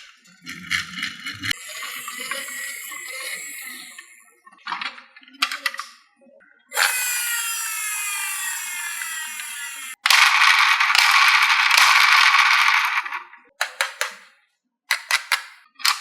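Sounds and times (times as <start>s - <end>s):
marbles clacking against track: 6.8s - 14.3s, 14.9s - 16.0s
marbles rolling on wooden track: 10.1s - 14.2s.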